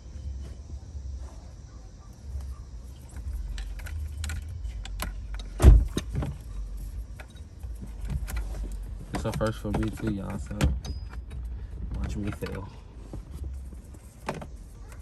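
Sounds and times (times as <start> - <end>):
clicks and rattles of car parts: 2.3 - 15.0
heavy thump: 5.6 - 6.4.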